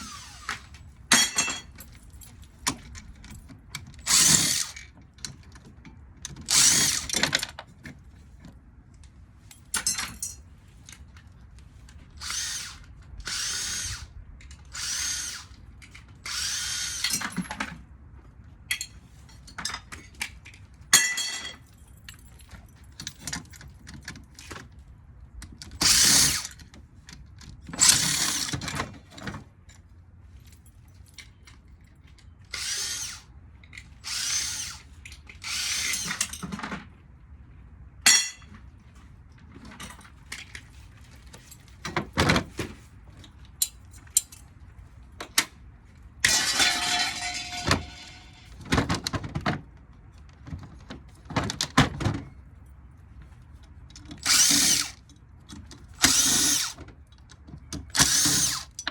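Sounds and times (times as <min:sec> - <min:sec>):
power drill bursts: 0:00.0 - 0:00.7, 0:12.2 - 0:14.1, 0:14.7 - 0:15.5, 0:16.3 - 0:17.1, 0:32.5 - 0:33.3, 0:34.0 - 0:34.8, 0:35.4 - 0:36.2, 0:46.3 - 0:48.5, 0:54.2 - 0:55.0, 0:56.0 - 0:56.8, 0:57.9 - 0:58.8.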